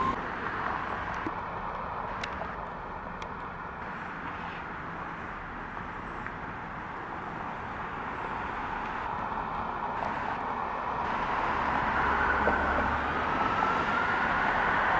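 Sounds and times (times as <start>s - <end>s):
road traffic noise: 0.0s - 14.9s.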